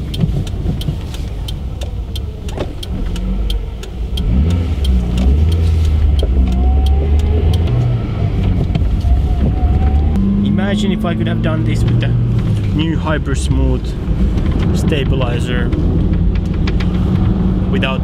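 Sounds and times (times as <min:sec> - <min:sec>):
car engine accelerating: 0:00.0 - 0:18.0
regular ticking: 0:00.0 - 0:18.0.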